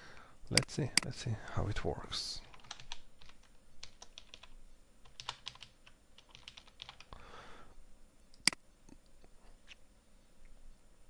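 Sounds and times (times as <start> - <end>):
computer keyboard typing: 2.5 - 7.2.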